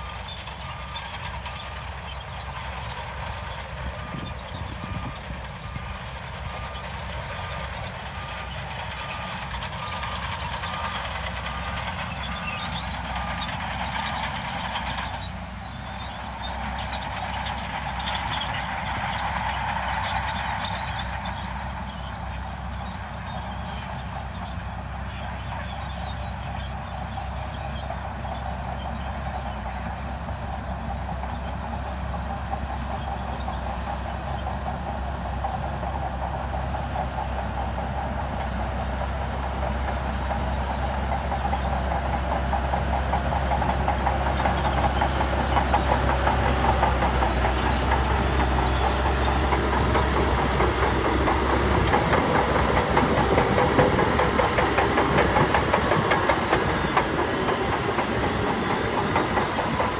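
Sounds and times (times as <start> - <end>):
diesel engine of heavy machinery: 0.0 - 59.9
fast metallic clatter: 43.5 - 59.9.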